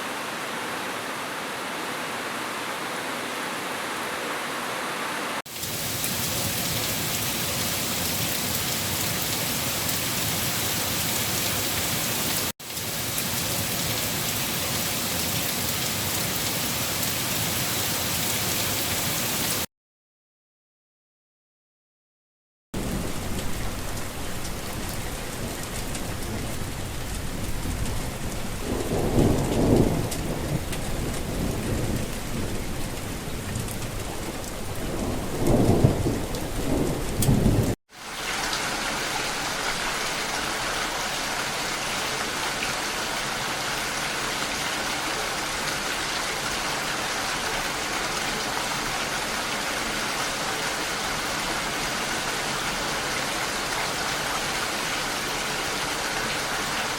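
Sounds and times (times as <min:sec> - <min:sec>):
heavy rain: 0:00.0 - 0:19.7, 0:22.8 - 0:56.9
steady bright rain: 0:00.0 - 0:19.7, 0:22.8 - 0:56.9
thunder rolling: 0:28.5 - 0:32.7, 0:34.7 - 0:37.8.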